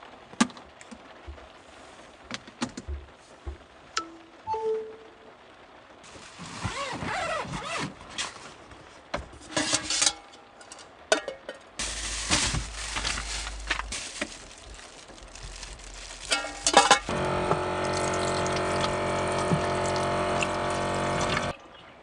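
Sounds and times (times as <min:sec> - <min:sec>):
rustling of objects handled: 0:06.0 - 0:17.1
low rumble: 0:11.8 - 0:17.1.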